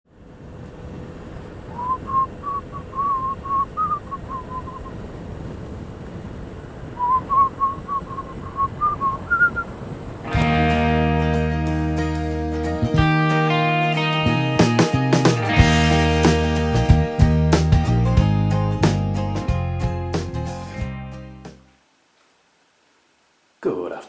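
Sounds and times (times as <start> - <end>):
low background rumble: 0.1 - 11.9
person whistling a tune: 1.8 - 4.9, 7.0 - 9.7.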